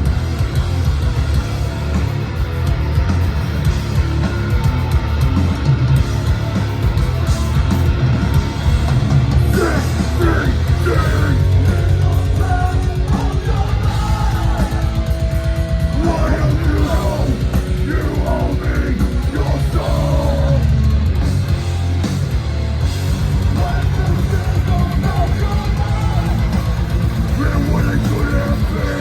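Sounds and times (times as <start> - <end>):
bass guitar: 0.0 - 29.0
distorted electric guitars: 0.0 - 29.0
pounding drums: 0.0 - 29.0
person yelling vocals: 9.5 - 12.7.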